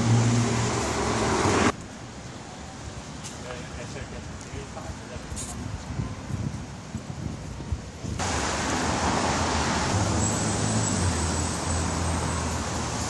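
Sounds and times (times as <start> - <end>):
road traffic rush: 0.0 - 13.0.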